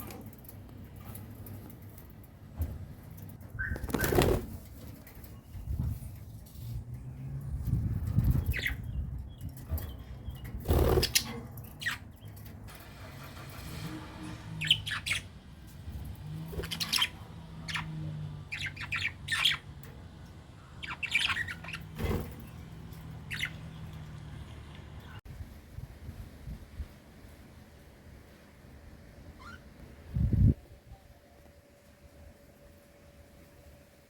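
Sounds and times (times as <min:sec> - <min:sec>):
birds chirping: 0:08.0 - 0:12.6, 0:14.6 - 0:25.2.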